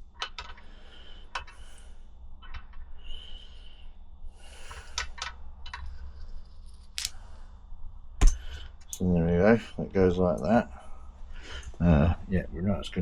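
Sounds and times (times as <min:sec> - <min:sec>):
small metal clicks and rattles: 0:00.1 - 0:00.6, 0:02.4 - 0:02.8.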